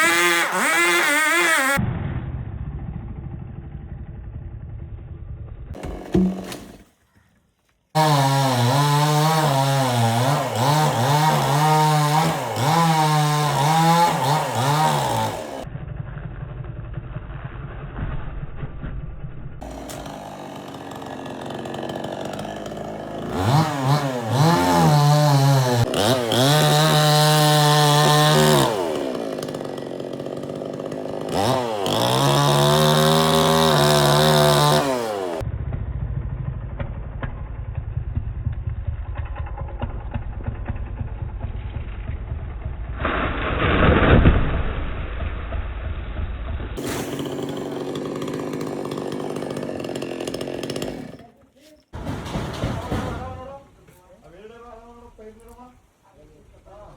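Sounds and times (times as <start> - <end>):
chainsaw engine revving: 0.0 - 1.8, 8.0 - 17.0, 19.6 - 35.4, 46.8 - 51.4, 52.0 - 53.4.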